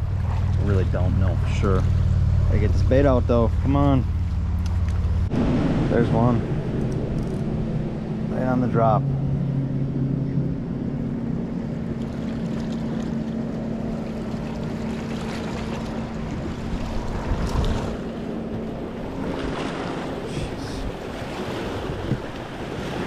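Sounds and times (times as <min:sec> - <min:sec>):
motorboat engine hum: 0:00.0 - 0:23.0
rushing water: 0:00.0 - 0:23.0
wind noise: 0:04.4 - 0:11.8, 0:16.3 - 0:23.0.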